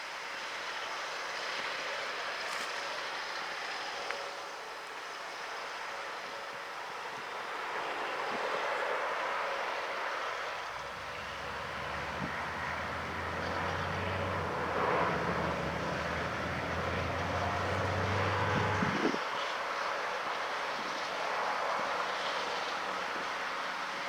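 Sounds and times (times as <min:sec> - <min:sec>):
low engine hum: 0:10.6 - 0:19.2
combine harvester mechanical din: 0:10.8 - 0:19.1.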